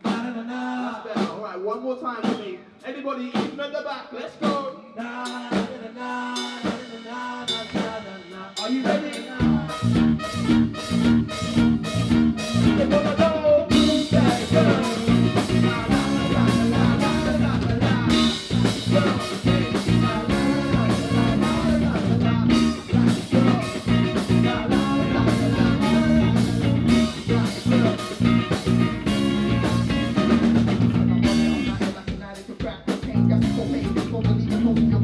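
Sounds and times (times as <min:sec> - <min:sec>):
drum kit steady beat: 0:04.4 - 0:34.9
bass guitar: 0:09.3 - 0:35.0
electric guitar: 0:09.3 - 0:35.0
person singing: 0:12.7 - 0:30.5.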